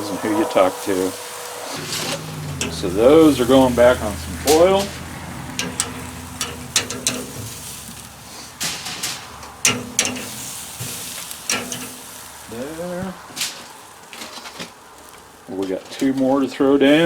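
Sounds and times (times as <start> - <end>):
faint sizzle: 0.0 - 14.2
tongs clicking: 1.8 - 3.0, 4.8 - 8.1, 9.4 - 12.3.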